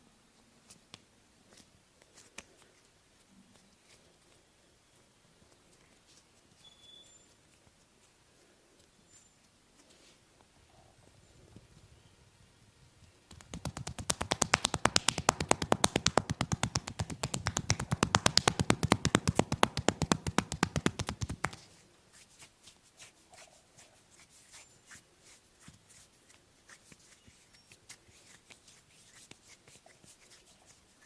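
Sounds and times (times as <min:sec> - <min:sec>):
hands slapping on body: 0:13.3 - 0:21.7
soft taps and rubbing: 0:13.3 - 0:21.8.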